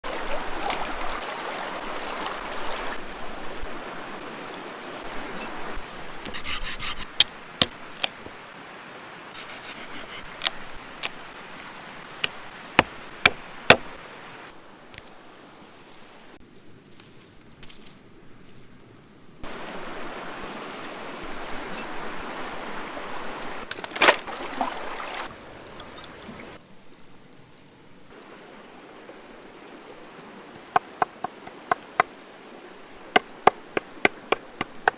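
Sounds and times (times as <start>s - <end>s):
rubbing and scraping: 6.3s - 7.3s, 9.4s - 10.6s.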